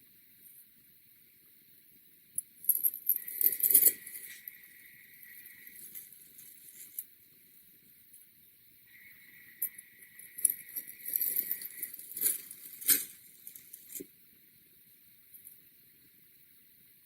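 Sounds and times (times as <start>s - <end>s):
faint ringing tone: 1.6s - 14.0s.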